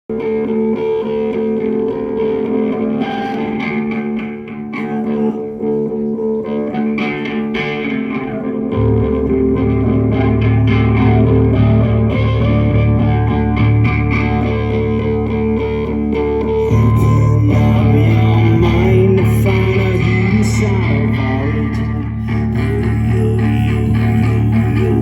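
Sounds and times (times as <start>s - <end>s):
effects-laden guitar: 0.0s - 25.0s
deep bass: 8.3s - 25.0s.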